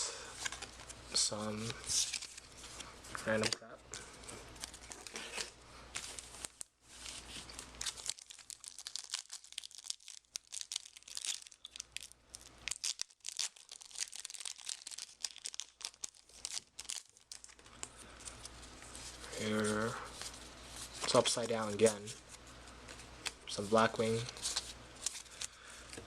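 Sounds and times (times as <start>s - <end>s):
foil wrapper tearing and crinkling: 4.6s - 18.5s.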